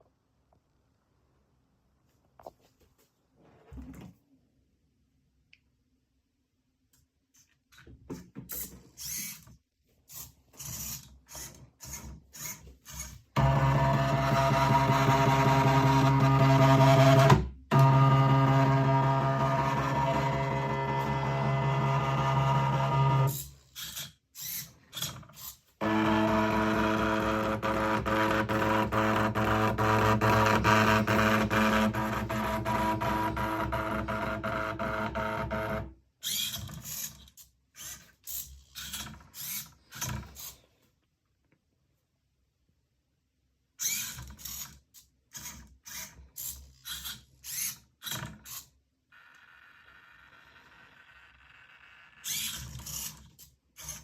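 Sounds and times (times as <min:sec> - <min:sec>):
small electric motors whirring: 0:08.6 - 0:09.4, 0:10.1 - 0:34.5, 0:43.8 - 0:54.0.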